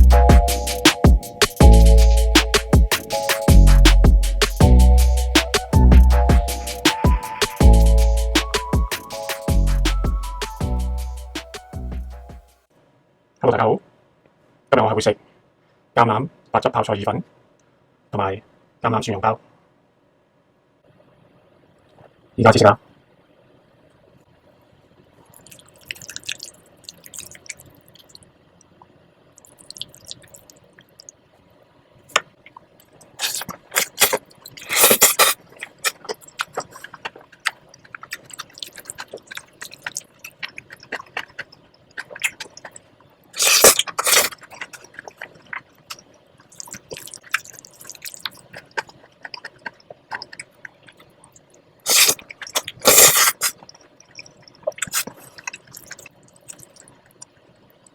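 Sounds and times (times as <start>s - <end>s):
wet chewing: 25.2s - 28.3s, 29.4s - 31.1s, 32.1s - 57.9s
lip smacks: 32.1s - 42.8s, 43.4s - 57.3s
mouth clicks: 43.4s - 57.3s.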